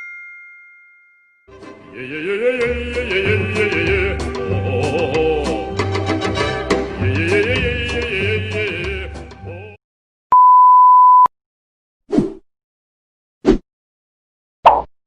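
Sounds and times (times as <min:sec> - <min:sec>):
music: 0:01.5 - 0:09.8
censor bleep: 0:10.3 - 0:11.3.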